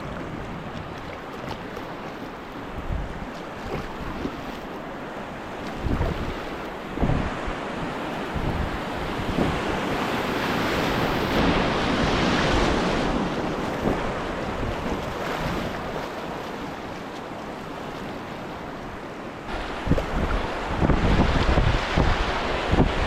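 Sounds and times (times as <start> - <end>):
rushing river water: 0.0 - 23.0
wind noise on microphone: 2.7 - 4.5, 5.6 - 16.1, 19.5 - 23.0.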